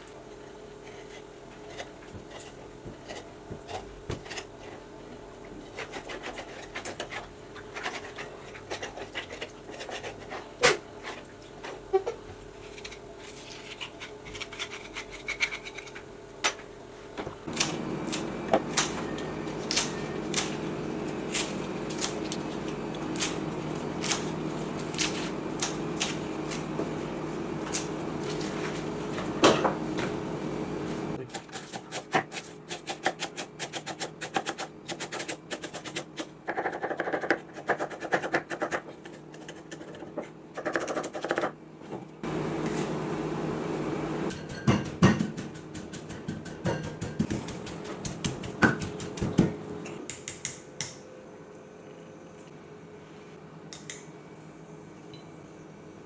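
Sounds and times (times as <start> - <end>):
kitchen utensils clicking and knocking: 44.3 - 49.5.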